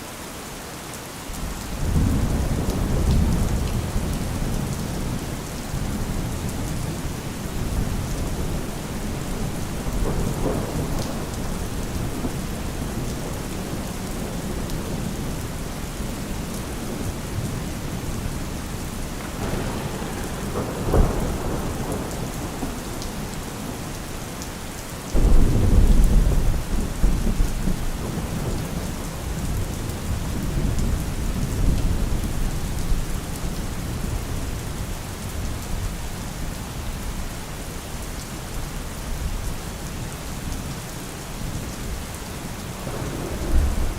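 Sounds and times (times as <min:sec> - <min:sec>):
rain falling: 0:00.0 - 0:43.9
thunder: 0:01.8 - 0:24.3, 0:25.1 - 0:34.6, 0:42.8 - 0:43.9.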